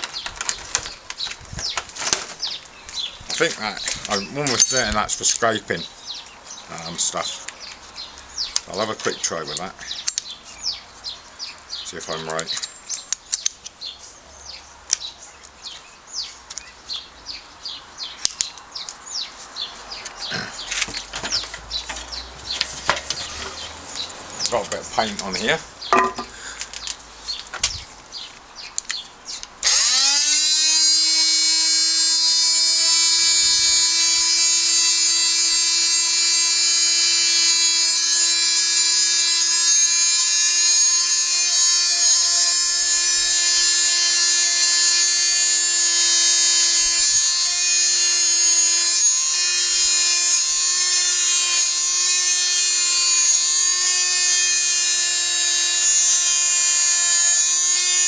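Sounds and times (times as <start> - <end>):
oscillating multi-tool buzzing: 29.6 - 58.0.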